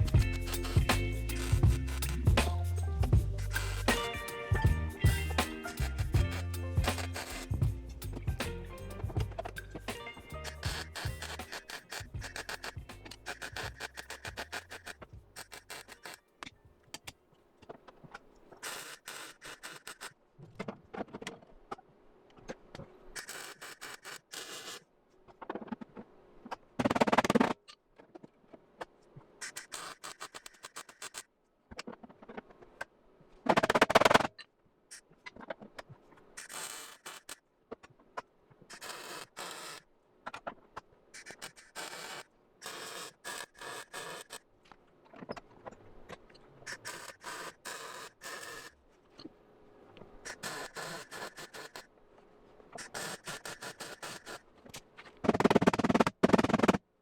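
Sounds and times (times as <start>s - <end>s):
welding crackling bursts: 0.0s - 4.5s, 5.2s - 7.6s, 9.9s - 16.2s, 52.9s - 54.4s.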